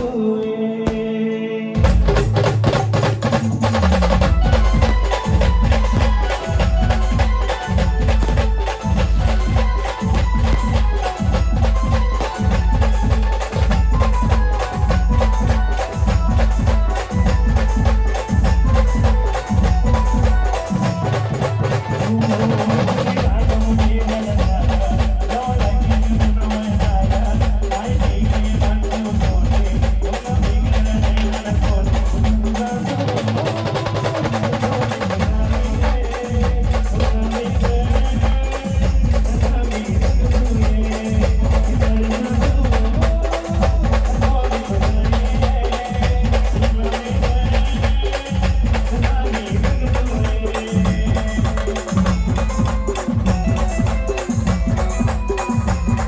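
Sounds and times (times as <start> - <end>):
steady drum beat: 0.0 - 56.0
instrumental melody: 4.2 - 22.4.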